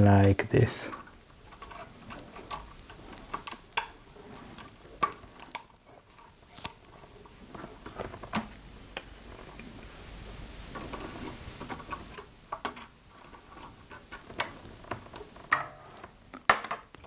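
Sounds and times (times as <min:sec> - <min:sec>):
small parts clicking: 0:00.2 - 0:08.4.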